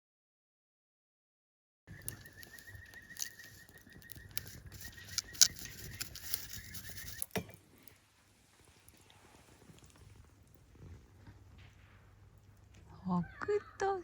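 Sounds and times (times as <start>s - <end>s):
wood fire crackling and popping: 1.9s - 13.0s.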